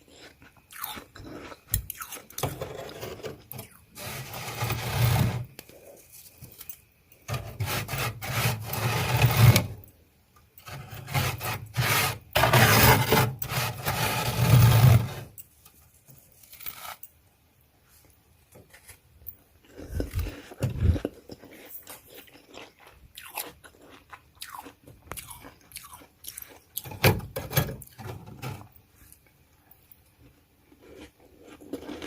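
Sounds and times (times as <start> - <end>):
chewing and crunching: 0.0 - 4.0, 19.3 - 27.0, 29.0 - 32.0
frost being scraped: 2.4 - 6.3, 7.3 - 9.8, 10.7 - 15.3, 16.0 - 17.1.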